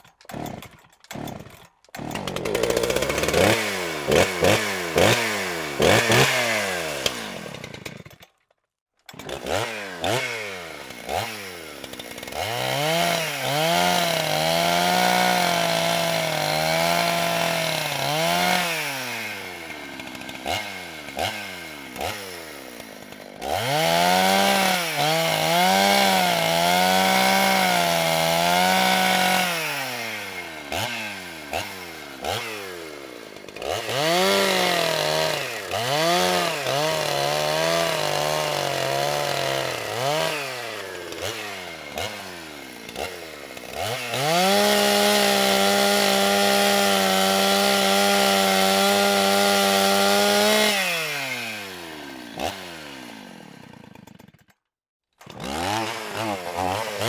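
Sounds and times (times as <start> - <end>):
chainsaw revving: 0.0 - 8.3, 9.1 - 54.5, 55.2 - 57.0.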